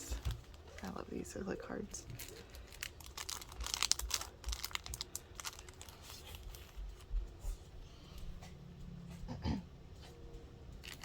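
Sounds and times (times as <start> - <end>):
packaging crinkling: 2.0 - 7.0.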